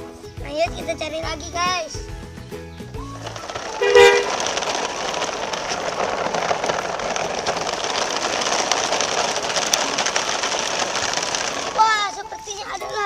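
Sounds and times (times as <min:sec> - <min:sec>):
vehicle running: 0:02.8 - 0:13.0
vehicle horn toot: 0:03.8 - 0:04.4.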